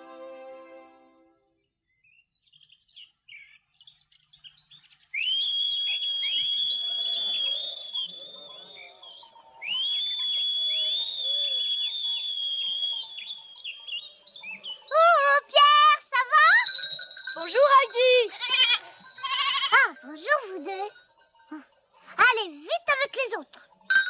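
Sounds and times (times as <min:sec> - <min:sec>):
birds chirping: 0:01.6 - 0:24.0
long high whistles: 0:05.2 - 0:09.0, 0:09.6 - 0:13.8.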